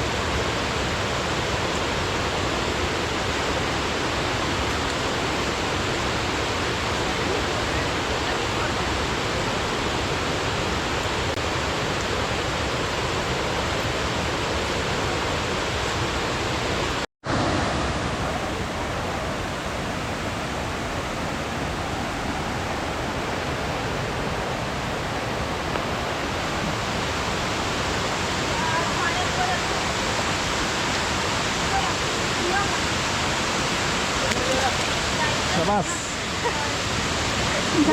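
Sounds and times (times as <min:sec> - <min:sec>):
waterfall pouring: 0:27.1 - 0:37.9.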